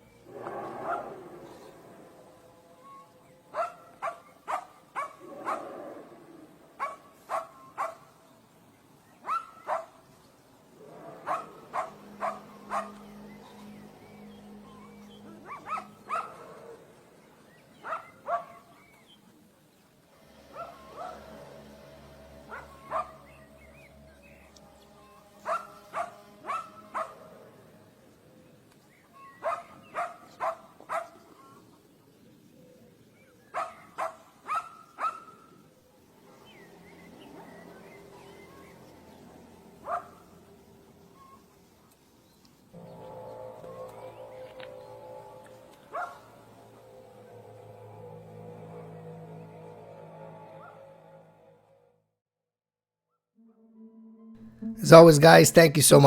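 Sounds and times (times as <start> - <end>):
dog barking: 0.4 - 1.2, 3.5 - 5.8, 6.8 - 8.0, 9.2 - 10.0, 11.2 - 13.0, 15.4 - 16.8, 17.8 - 18.8, 20.5 - 21.2, 22.5 - 23.2, 25.4 - 27.3, 29.4 - 31.3, 33.5 - 35.4, 39.8 - 40.2, 45.9 - 46.2, 50.6 - 50.9.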